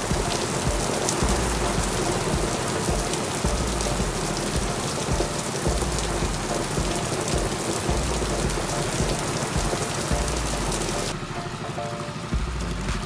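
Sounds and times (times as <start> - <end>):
heavy rain falling: 0.0 - 13.0
low rumble: 1.2 - 4.8.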